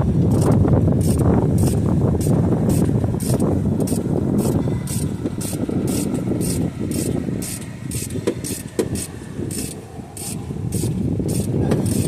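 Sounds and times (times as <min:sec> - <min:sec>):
low traffic rumble: 0:00.0 - 0:12.0
ratchet wrench rasping: 0:00.3 - 0:12.0
sharp metal knocks: 0:02.7 - 0:10.4.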